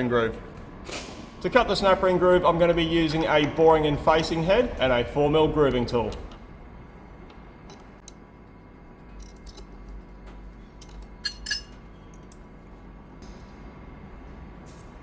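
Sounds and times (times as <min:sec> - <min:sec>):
steady low hum: 0:00.0 - 0:15.0
metallic clicks and clinks: 0:09.1 - 0:09.8, 0:10.8 - 0:12.4.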